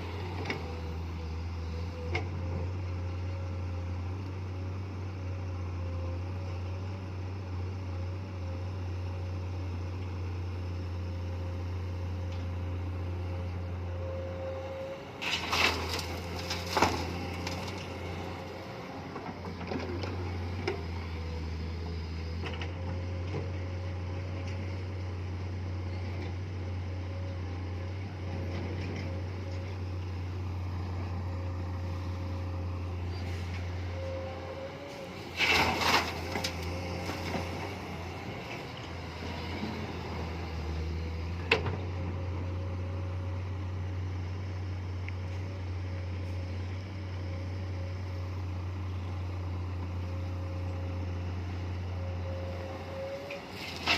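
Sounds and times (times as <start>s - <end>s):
excavator diesel engine running: 0.0s - 53.9s.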